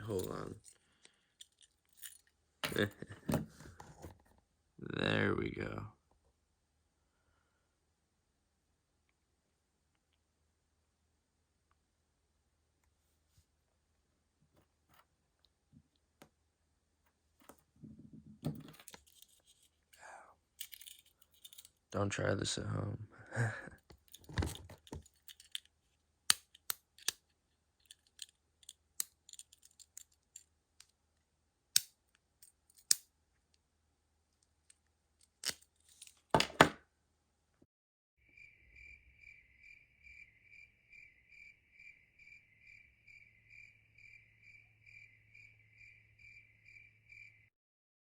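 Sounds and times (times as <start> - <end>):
metallic clicks and snips: 31.8 - 32.0
crickets chirping: 38.2 - 47.5.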